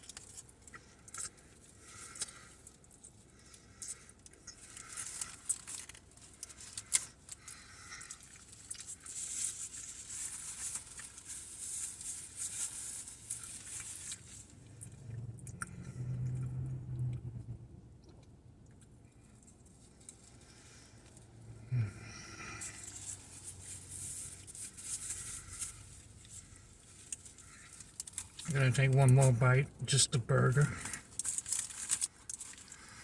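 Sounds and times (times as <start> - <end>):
closed-mouth humming: 14.6 - 18.4
paper wrapper crinkling: 30.6 - 33.0.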